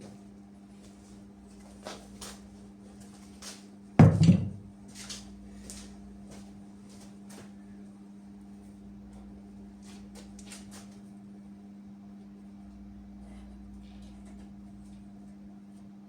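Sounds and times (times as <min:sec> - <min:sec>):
steady low hum: 0:00.1 - 0:16.0
loud knock with clatter: 0:04.0 - 0:04.7.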